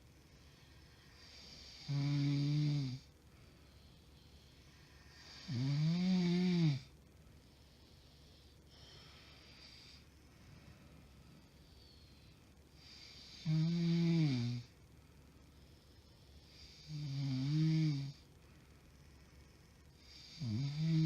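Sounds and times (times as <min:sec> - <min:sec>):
woman snoring loudly: 0:01.2 - 0:03.1, 0:05.1 - 0:06.9, 0:12.8 - 0:14.7, 0:16.6 - 0:18.2, 0:20.0 - 0:21.0.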